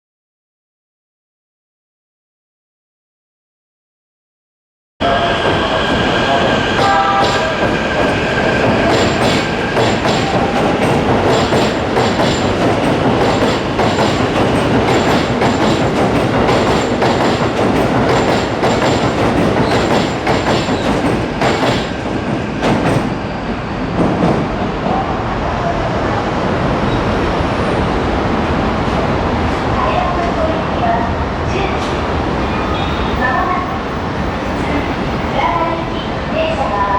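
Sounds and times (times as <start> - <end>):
train wheels clattering on rails: 6.8 - 23.2.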